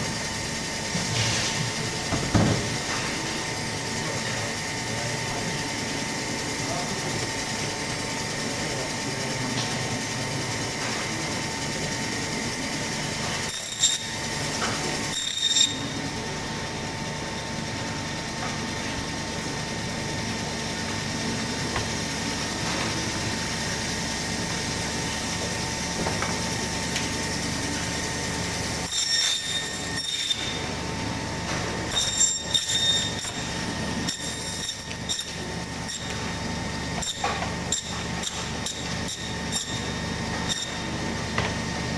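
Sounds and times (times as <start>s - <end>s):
meat bandsaw humming: 0.0s - 41.9s
bandsaw blade cutting: 13.4s - 16.0s, 28.7s - 30.8s, 31.8s - 36.3s, 36.9s - 41.0s.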